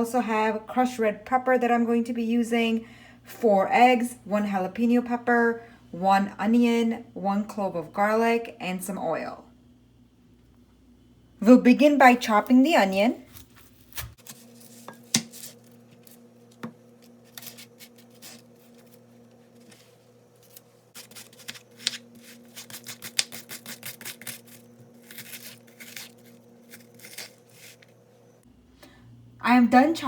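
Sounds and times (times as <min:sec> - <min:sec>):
steady low hum: 0:00.0 - 0:30.0
knife chopping on cutting board: 0:14.9 - 0:15.5.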